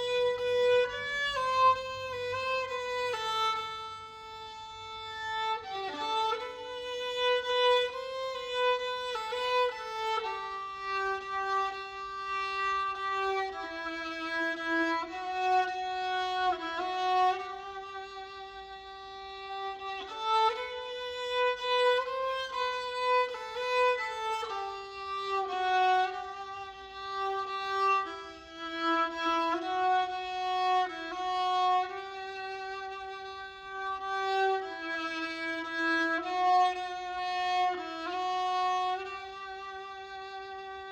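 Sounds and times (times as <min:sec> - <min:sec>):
solo violin slow melody: 0:00.0 - 0:40.9.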